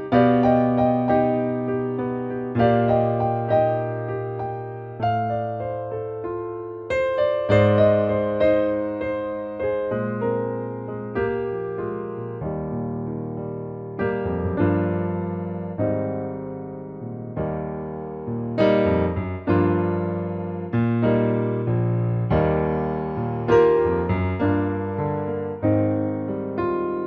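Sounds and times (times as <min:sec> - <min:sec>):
slow electric piano chords: 0:00.0 - 0:27.0.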